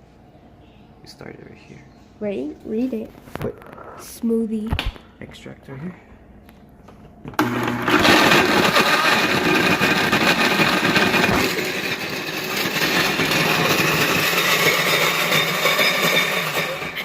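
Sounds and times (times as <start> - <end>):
blender running: 7.4 - 17.0.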